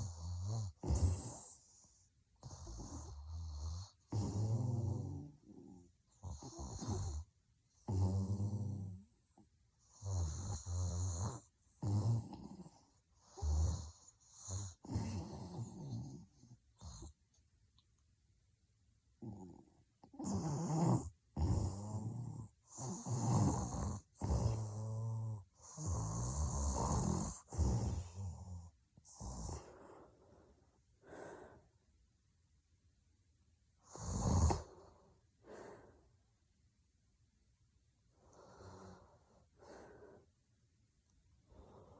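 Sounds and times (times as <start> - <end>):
woman snoring heavily: 0.0 - 1.6, 2.4 - 9.0, 9.9 - 16.9, 19.2 - 29.9, 33.9 - 34.8
faint breaths: 26.7 - 32.0, 34.4 - 36.4, 38.0 - 40.6, 41.4 - 41.9.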